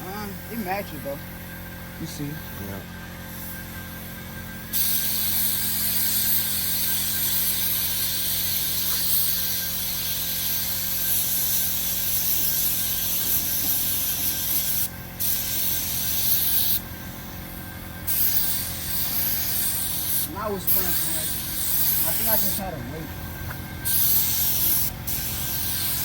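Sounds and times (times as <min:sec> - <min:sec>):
paint spray gun hissing: 0:04.7 - 0:26.0.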